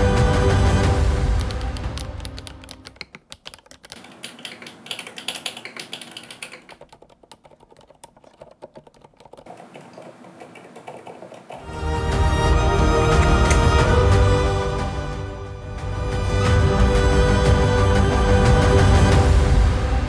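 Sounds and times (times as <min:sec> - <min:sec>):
background music: 0:00.0 - 0:03.1, 0:11.6 - 0:20.0
mechanical keyboard key clicks: 0:01.4 - 0:09.4.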